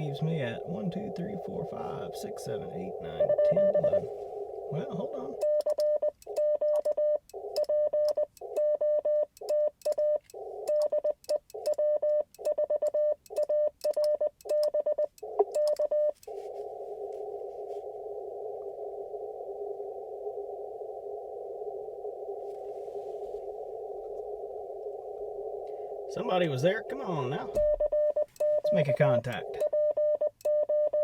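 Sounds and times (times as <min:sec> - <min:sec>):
radio band hiss: 0:00.0 - 0:05.4, 0:21.1 - 0:27.6, 0:28.6 - 0:29.7
morse code tone: 0:00.0 - 0:19.0, 0:22.0 - 0:31.0.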